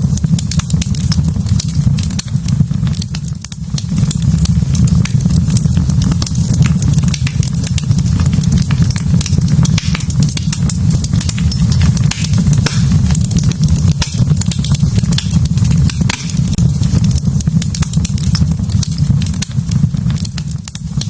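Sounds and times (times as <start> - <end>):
wood fire crackling and popping: 0.0 - 21.0
low rumble: 4.0 - 19.4.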